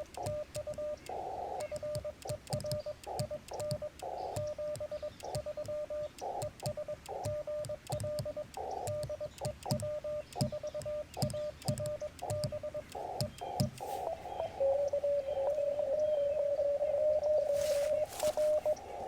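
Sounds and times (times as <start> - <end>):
paddle key clicks: 0.0 - 14.2
morse code tone: 0.0 - 19.0
radio hiss: 12.9 - 15.2, 17.4 - 19.0.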